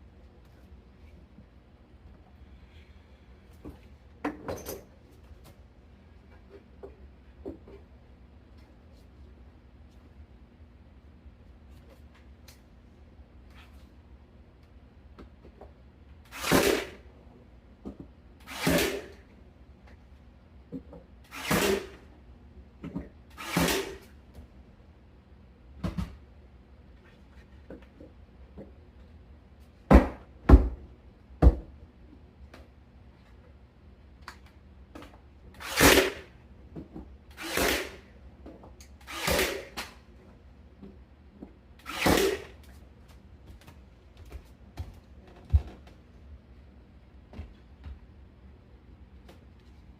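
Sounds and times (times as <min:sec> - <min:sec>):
nail gun firing: 0:16.3 - 0:17.0, 0:18.5 - 0:19.2, 0:21.3 - 0:22.0, 0:23.4 - 0:24.0, 0:35.6 - 0:36.3, 0:37.4 - 0:38.1, 0:39.0 - 0:40.0, 0:41.8 - 0:42.6.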